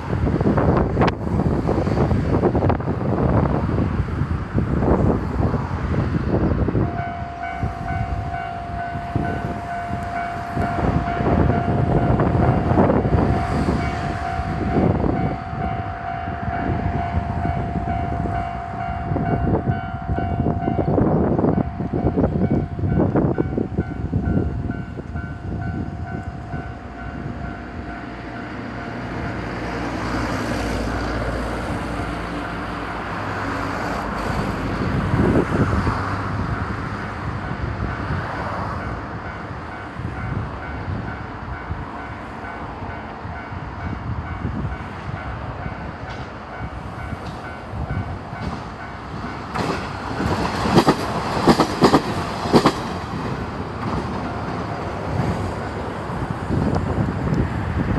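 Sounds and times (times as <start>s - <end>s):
diesel train rumble: 0.0s - 57.9s
wheels clacking over rail joints: 45.6s - 57.4s.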